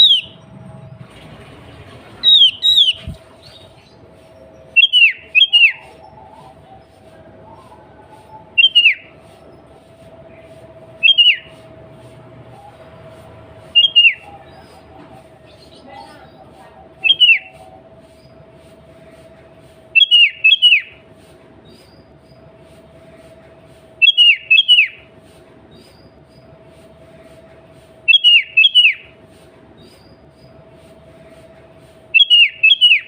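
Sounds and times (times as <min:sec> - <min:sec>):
bird singing whistled notes: 0:00.0 - 0:00.5, 0:02.2 - 0:06.6, 0:07.4 - 0:09.2, 0:11.0 - 0:11.7, 0:13.7 - 0:14.8, 0:17.0 - 0:17.6, 0:20.0 - 0:21.0, 0:24.0 - 0:25.1, 0:28.1 - 0:29.2, 0:32.1 - 0:33.0.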